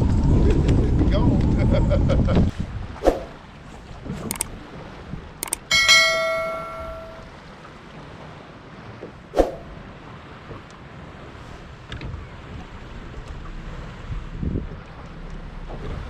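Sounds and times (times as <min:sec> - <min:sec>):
wind noise on microphone: 0:00.0 - 0:07.4, 0:08.8 - 0:16.0
sharp metallic clang: 0:05.4 - 0:07.3.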